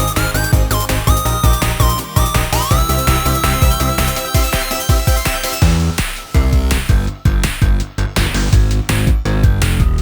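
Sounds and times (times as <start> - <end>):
upbeat electronic music: 0.0 - 10.0.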